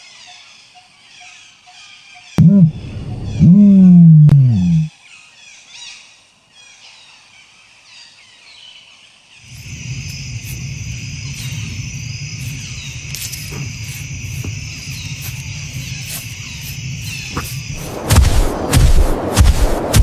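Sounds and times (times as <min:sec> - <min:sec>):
bird chirps: 0:00.2 - 0:04.9, 0:09.4 - 0:18.0
low hum: 0:02.4 - 0:04.9, 0:09.6 - 0:20.0
loud insect chorus: 0:04.9 - 0:20.0.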